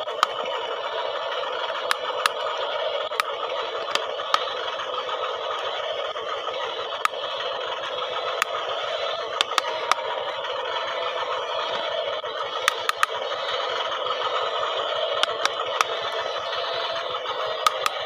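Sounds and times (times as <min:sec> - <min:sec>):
small motors whirring: 0:00.0 - 0:18.0
sharp clicks: 0:01.9 - 0:02.4, 0:09.4 - 0:10.0, 0:12.6 - 0:13.2, 0:15.2 - 0:16.0, 0:17.6 - 0:18.0.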